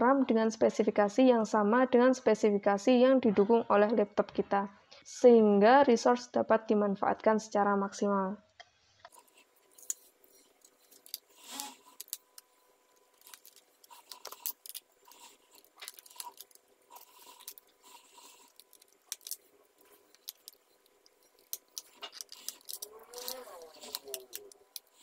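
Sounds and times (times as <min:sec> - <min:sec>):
screwdriver clicking and scraping: 0:13.2 - 0:25.0.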